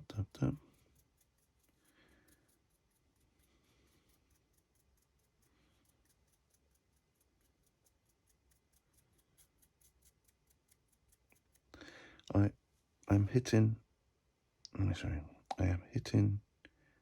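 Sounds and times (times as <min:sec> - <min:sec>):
faint rapid ticks: 0:00.5 - 0:11.8.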